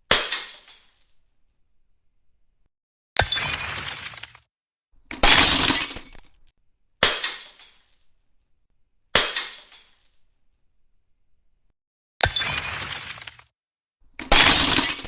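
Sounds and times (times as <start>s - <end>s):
glass smashing: 3.2s - 4.4s, 12.2s - 13.5s.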